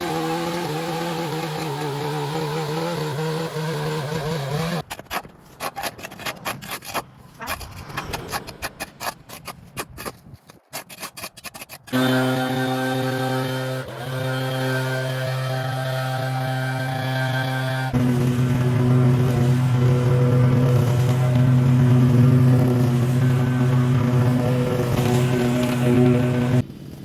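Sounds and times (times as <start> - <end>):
irregular scraping and crackling: 4.8 - 12.1
small engine humming: 11.9 - 26.8.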